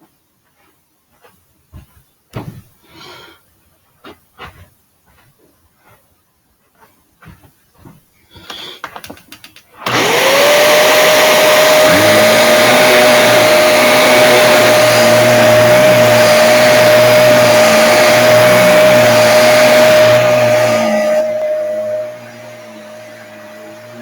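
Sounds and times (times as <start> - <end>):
vacuum cleaner motor whine: 9.8 - 24.0
low wavering hum: 11.8 - 24.0.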